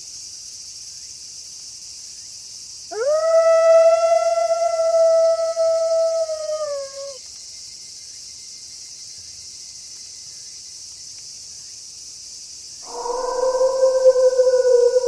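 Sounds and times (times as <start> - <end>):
night insects hissing: 0.0 - 15.0
wolf howling: 2.9 - 7.2, 12.8 - 15.0.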